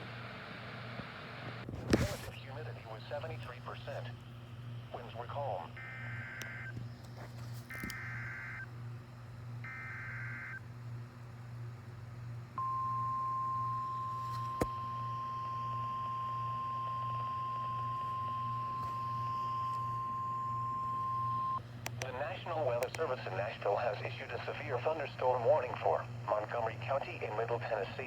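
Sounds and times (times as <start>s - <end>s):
low receiver hum: 0.0s - 28.0s
steady warning alarm tone: 5.8s - 6.8s, 7.7s - 8.7s, 9.6s - 10.6s, 12.6s - 21.6s.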